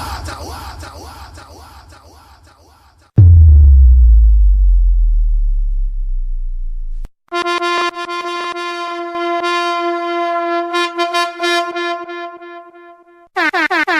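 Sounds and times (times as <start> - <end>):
deep bass boom: 3.2 - 7.1.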